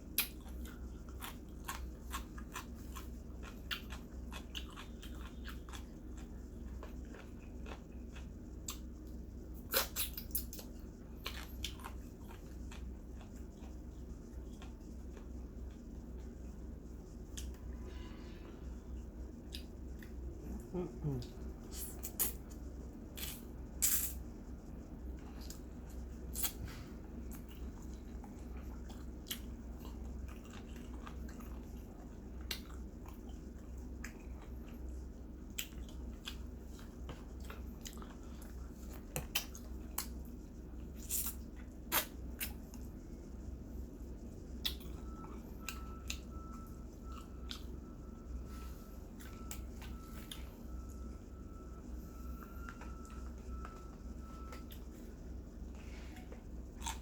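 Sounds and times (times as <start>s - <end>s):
chewing and biting chicken: 0.0s - 15.8s, 25.2s - 43.0s
steady low hum: 0.0s - 57.0s.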